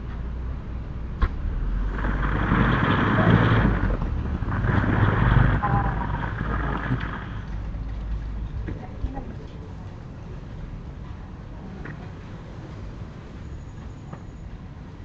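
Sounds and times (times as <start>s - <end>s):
motor vehicle passing by: 1.2s - 8.4s.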